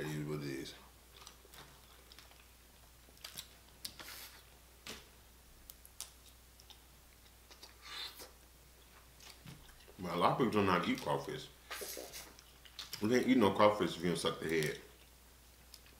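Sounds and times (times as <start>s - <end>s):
soft rustle or slurp: 3.3s - 4.5s, 11.6s - 12.9s.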